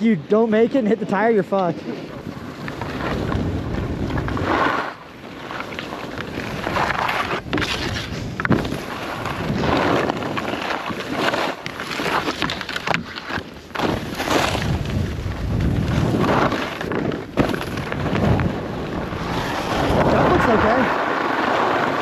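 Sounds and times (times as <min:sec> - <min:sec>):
wind rushing over microphone: 0:02.0 - 0:05.2, 0:14.0 - 0:22.0
skis hissing over snow: 0:04.2 - 0:12.3, 0:19.1 - 0:22.0.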